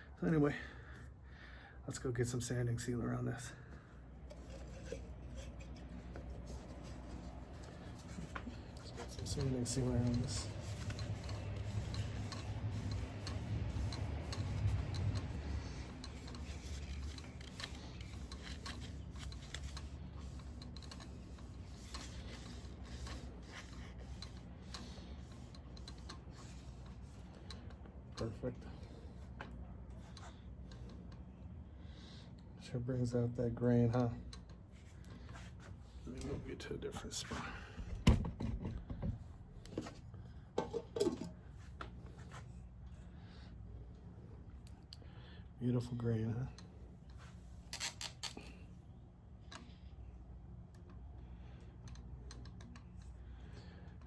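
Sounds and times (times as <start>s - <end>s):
light clicks and rubbing: 4.2s - 28.6s.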